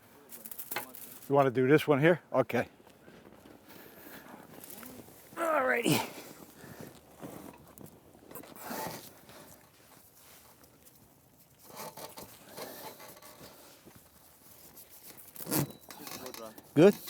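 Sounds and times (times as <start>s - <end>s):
tarp rustling: 3.3s - 15.9s
rope zipping scrapes: 8.4s - 9.5s, 11.6s - 15.8s.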